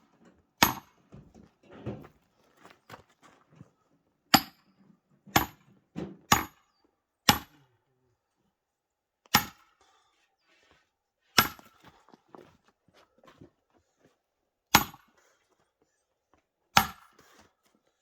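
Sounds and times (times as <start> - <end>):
axe chopping firewood: 0.6 - 1.0, 4.3 - 4.6, 5.3 - 5.6, 6.3 - 6.6, 7.3 - 7.5, 9.3 - 9.7, 11.4 - 12.0, 14.7 - 15.1, 16.8 - 17.2.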